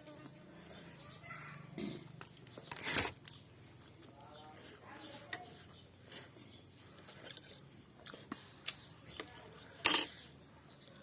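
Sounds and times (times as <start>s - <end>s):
chewing: 1.8s - 10.2s.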